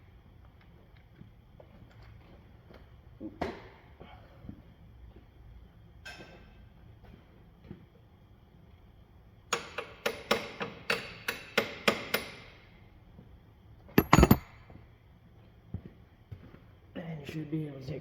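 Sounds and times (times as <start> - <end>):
hammer striking metal: 14.0 - 14.5.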